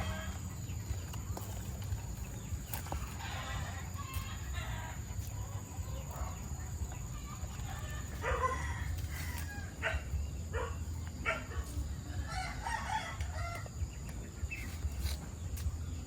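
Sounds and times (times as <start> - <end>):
rooster crowing: 0.0 - 0.6, 7.6 - 10.0, 12.2 - 13.8
chickens clucking: 0.0 - 16.0.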